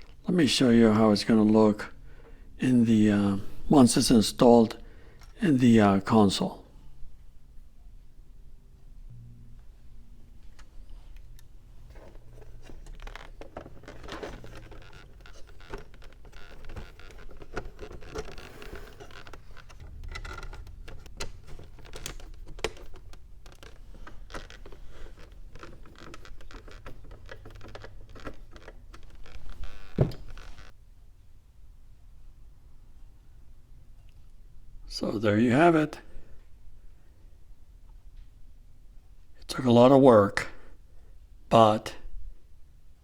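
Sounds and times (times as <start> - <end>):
plastic clicks and scrapes: 10.5 - 30.7.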